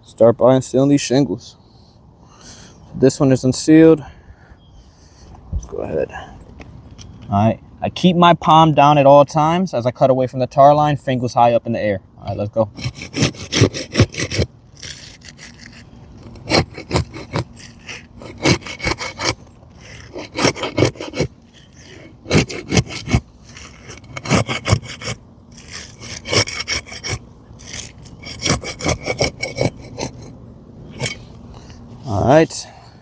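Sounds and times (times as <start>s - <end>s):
pry bar scraping sealant: 12.8s - 30.3s.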